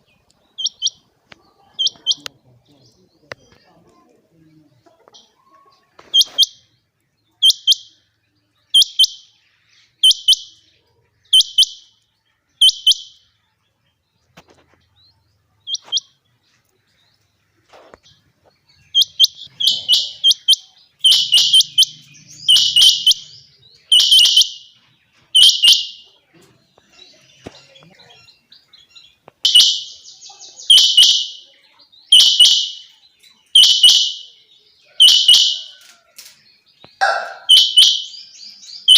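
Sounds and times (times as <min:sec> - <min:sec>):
quail calling: 0:01.6 - 0:02.4, 0:05.1 - 0:06.6, 0:18.9 - 0:23.3, 0:23.9 - 0:24.7, 0:25.4 - 0:26.1, 0:29.5 - 0:31.5, 0:32.1 - 0:32.9, 0:33.6 - 0:36.0, 0:37.0 - 0:38.2.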